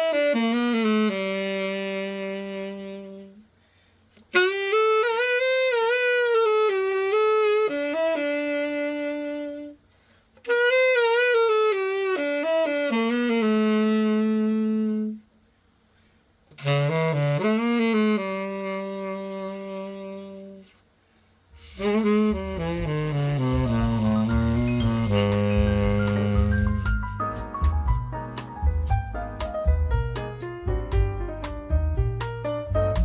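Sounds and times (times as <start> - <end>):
tenor saxophone phrases: 0.0 - 3.5, 4.2 - 9.8, 10.4 - 15.3, 16.5 - 20.8, 21.6 - 27.2.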